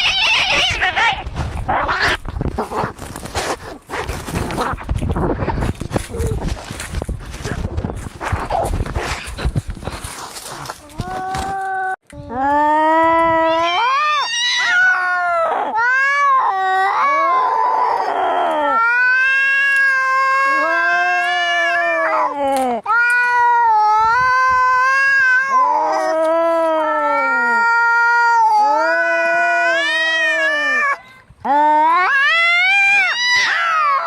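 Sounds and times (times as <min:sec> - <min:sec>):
cats yowling in a fight: 0:00.0 - 0:02.2, 0:13.3 - 0:34.0.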